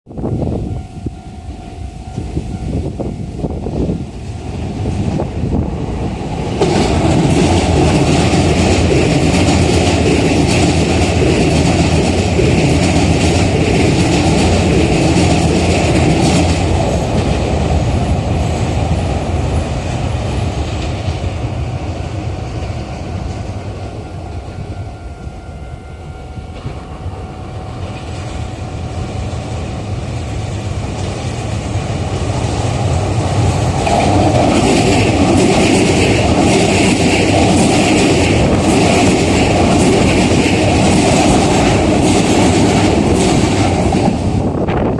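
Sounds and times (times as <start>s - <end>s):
electric train passing: 0.1s - 44.9s
wheels clattering over rail joints: 6.3s - 21.6s, 29.5s - 44.5s.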